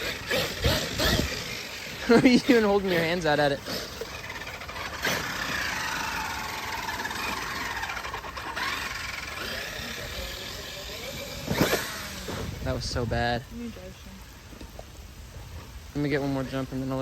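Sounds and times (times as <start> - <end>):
toy car motor whining: 0.0 - 12.9.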